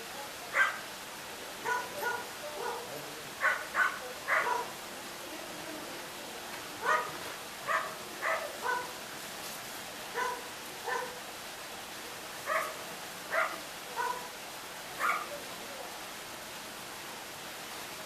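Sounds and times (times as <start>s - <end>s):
steady background hiss: 0.0s - 18.0s
dog barking: 0.5s - 0.8s, 1.6s - 4.7s, 6.8s - 8.9s, 10.1s - 11.2s, 12.5s - 14.3s, 15.0s - 15.4s.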